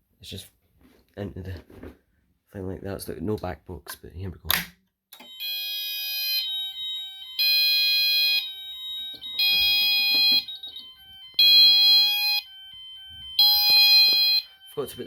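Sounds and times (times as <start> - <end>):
pulsing fire alarm tone: 5.2 - 15.0.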